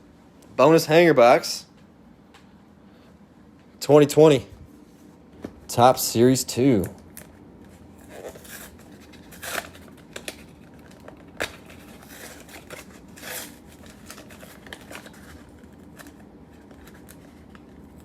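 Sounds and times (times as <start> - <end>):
packaging rustling and tearing: 6.9 - 18.0.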